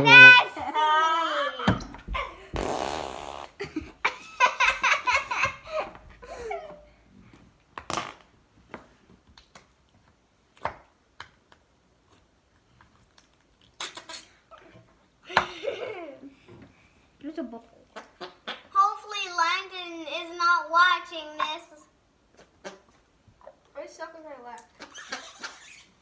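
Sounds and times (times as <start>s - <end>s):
children laughing: 0.0s - 2.6s, 3.5s - 6.9s, 14.5s - 16.4s, 24.8s - 25.8s
slime squelching fart noise: 2.4s - 3.7s, 7.8s - 8.3s, 13.6s - 14.5s.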